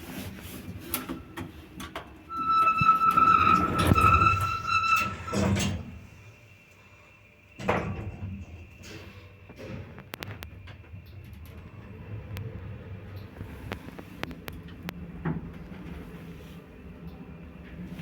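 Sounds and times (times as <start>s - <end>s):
lift squeaking: 0.9s - 6.3s.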